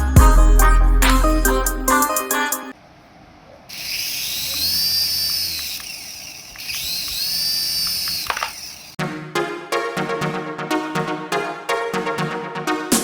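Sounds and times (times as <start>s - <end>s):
toy electric motor whining: 3.7s - 9.0s
clicks: 4.5s - 8.9s.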